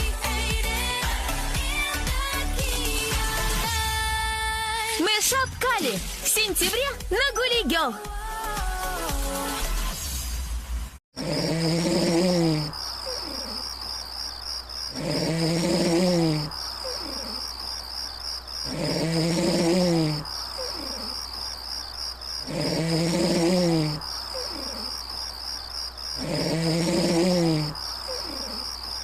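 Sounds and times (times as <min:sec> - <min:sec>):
pulsing insect trill: 0:11.2 - 0:29.0.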